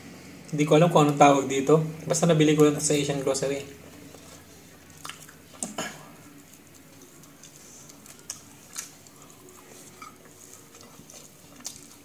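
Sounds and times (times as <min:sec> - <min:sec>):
person chewing food: 0:03.9 - 0:12.0.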